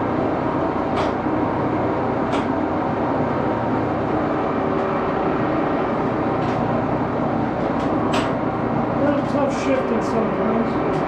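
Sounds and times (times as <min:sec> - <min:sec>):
lathe gears whirring: 0:00.0 - 0:11.0.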